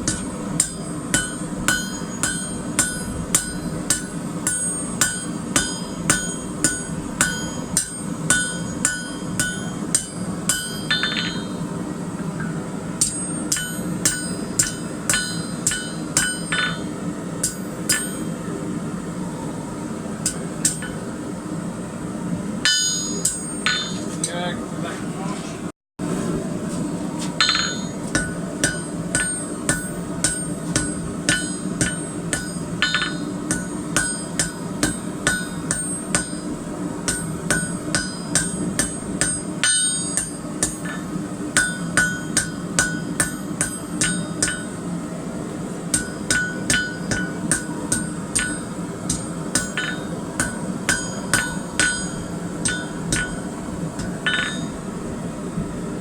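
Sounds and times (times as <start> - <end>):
hammer striking steel on anvil: 0.0 - 11.7, 12.4 - 18.4, 20.2 - 21.1, 22.6 - 24.4, 27.3 - 44.9, 45.9 - 55.0
low hum: 0.0 - 25.2.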